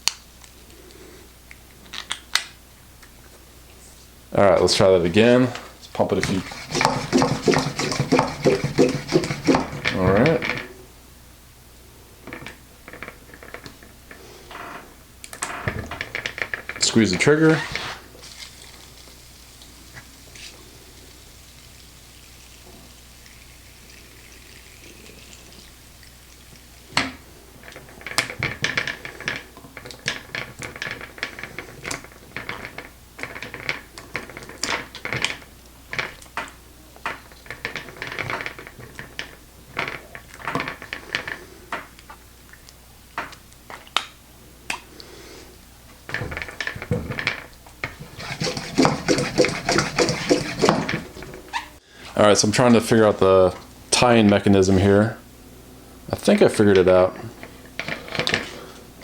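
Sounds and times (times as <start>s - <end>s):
short squeaks: 48.1s - 51.8s.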